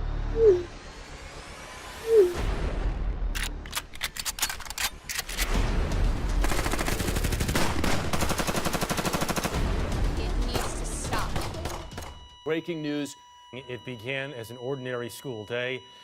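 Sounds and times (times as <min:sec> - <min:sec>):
rapid gunfire: 0:06.3 - 0:12.2
gunshots: 0:06.4 - 0:09.9.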